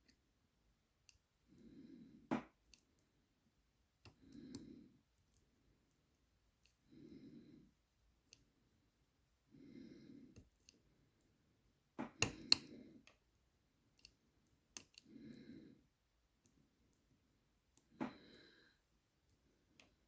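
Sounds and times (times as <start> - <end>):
slow breaths: 1.5 - 2.4, 4.1 - 5.1, 6.8 - 7.8, 9.4 - 11.4, 15.0 - 16.0, 17.8 - 20.0.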